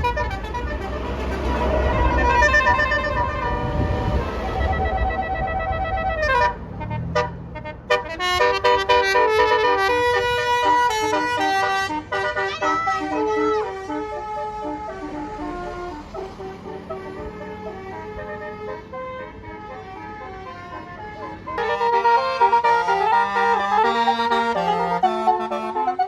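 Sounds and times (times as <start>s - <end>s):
low rumble: 0.0s - 6.4s
bus multi-trumpet horn tune: 0.0s - 26.0s.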